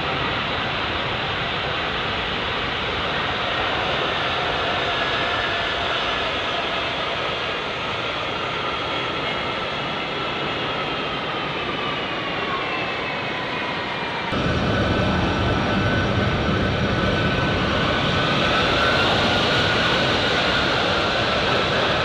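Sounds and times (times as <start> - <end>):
jet engine whine: 0.0 - 22.0
low rumble: 14.4 - 18.3.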